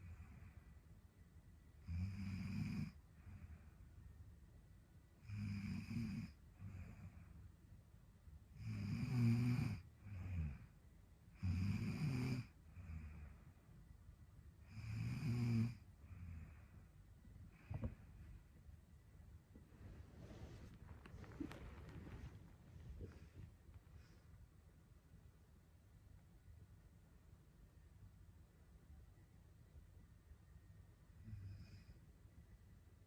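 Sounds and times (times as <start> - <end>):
woman snoring: 1.8 - 3.0, 5.3 - 6.4, 8.6 - 10.6, 11.4 - 13.1, 14.7 - 15.8.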